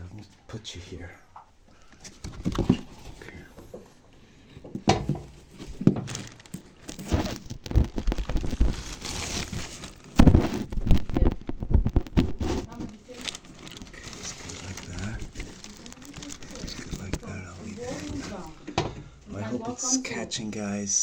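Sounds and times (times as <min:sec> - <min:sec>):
rustling and crinkling: 0:00.0 - 0:19.5
loud knocks and thumps: 0:06.9 - 0:12.9.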